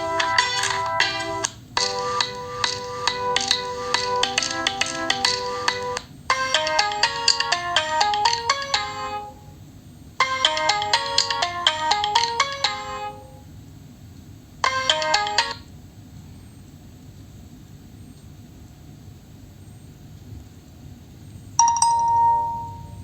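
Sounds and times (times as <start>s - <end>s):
phone ringtone melody: 0.0s - 9.5s, 10.2s - 13.4s, 14.6s - 15.6s, 21.6s - 23.0s.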